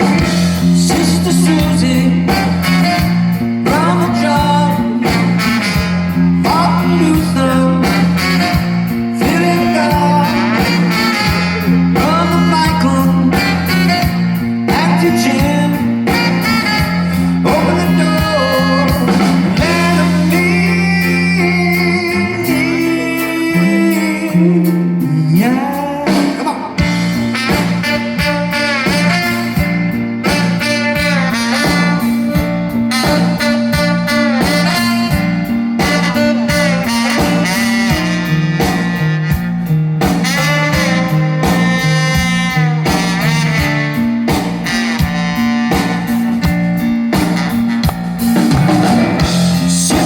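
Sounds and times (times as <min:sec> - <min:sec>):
lead singer: 0:00.0 - 0:39.4, 0:48.3 - 0:50.0
live rock band: 0:00.0 - 0:50.0.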